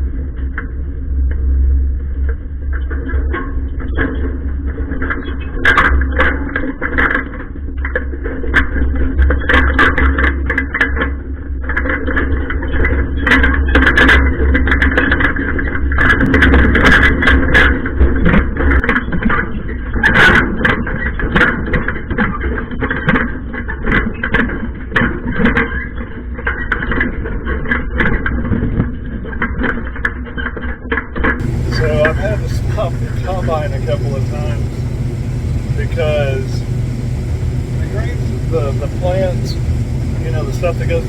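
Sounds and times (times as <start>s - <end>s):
farm machinery engine running: 31.4s - 41.0s.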